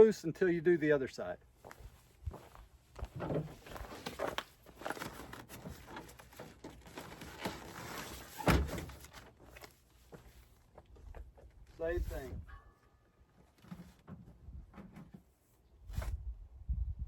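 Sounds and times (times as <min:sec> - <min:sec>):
tent fabric rustling: 0:03.6 - 0:09.8.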